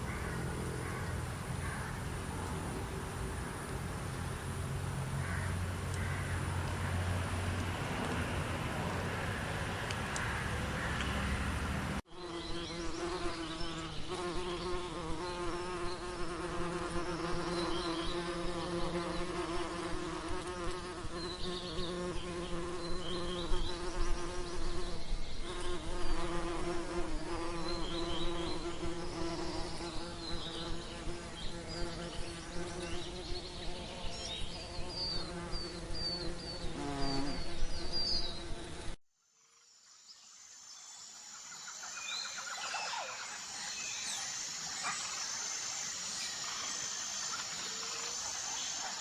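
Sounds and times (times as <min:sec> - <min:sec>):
birds chirping: 0:00.0 - 0:16.1, 0:40.4 - 0:49.0.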